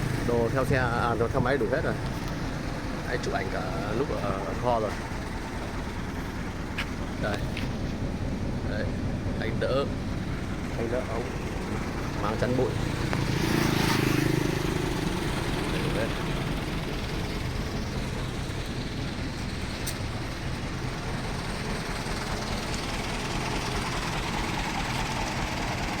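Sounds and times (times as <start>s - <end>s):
motor humming steadily: 0.0s - 26.0s.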